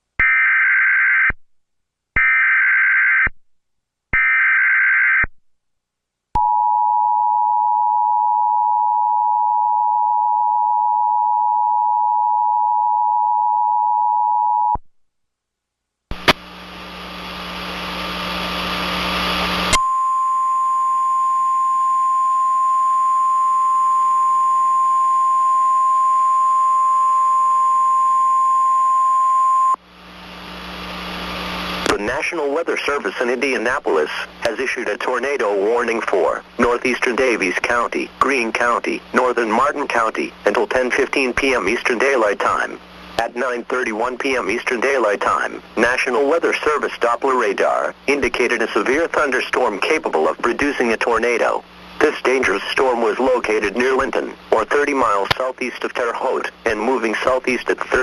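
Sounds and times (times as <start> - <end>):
static hiss: 16.1 - 19.8, 29.8 - 58.0
steady alarm tone: 19.7 - 29.8.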